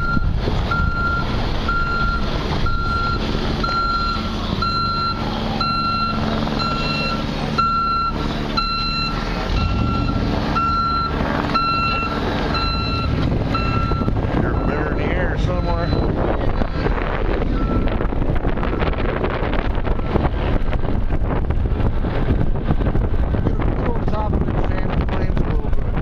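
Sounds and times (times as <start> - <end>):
reversing alarm beeping: 0.0 - 16.2, 17.5 - 18.0
engine idling: 0.0 - 26.0.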